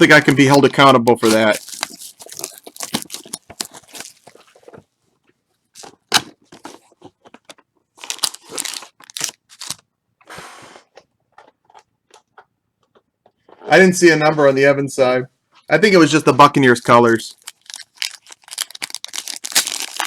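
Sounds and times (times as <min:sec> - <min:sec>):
card sleeves crinkling and rustling: 0:00.0 - 0:05.0, 0:05.7 - 0:09.8, 0:16.6 - 0:20.0.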